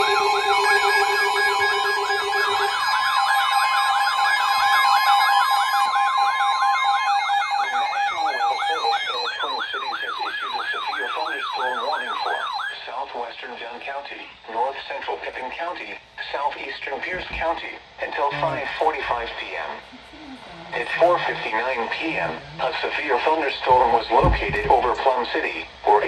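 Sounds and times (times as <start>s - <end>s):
fast sweeping electronic siren: 0.0s - 12.8s, 20.8s - 25.0s
steady alarm tones: 0.0s - 13.8s, 17.0s - 25.8s.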